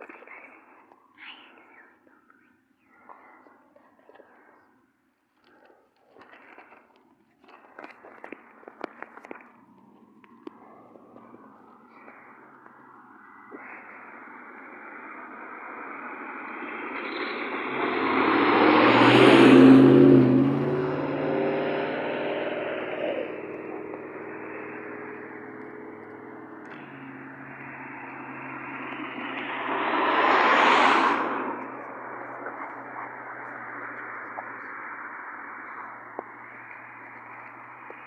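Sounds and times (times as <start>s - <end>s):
vehicle passing: 9.6s - 38.0s.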